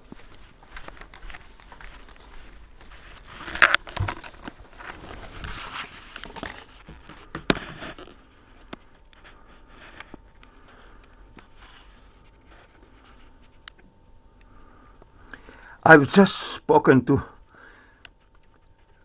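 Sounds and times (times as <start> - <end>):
rustling handling noise: 0.0 - 13.8.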